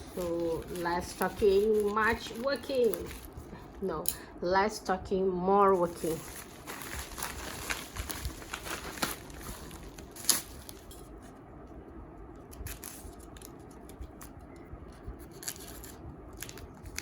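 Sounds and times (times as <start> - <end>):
packaging clicks and scratching: 0.0 - 3.4, 5.7 - 11.0, 12.6 - 17.0
packaging cutting or tearing: 5.9 - 11.0, 15.2 - 17.0.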